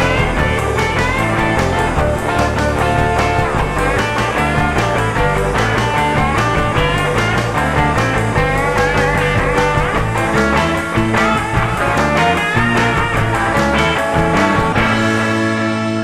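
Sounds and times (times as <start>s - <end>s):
rock music with guitar: 0.0s - 16.0s.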